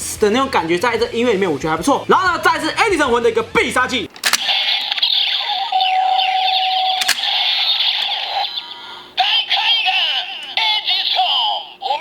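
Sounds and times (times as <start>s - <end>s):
electronic buzz with held tone: 4.7s - 9.2s
sharp click: 7.0s - 7.4s.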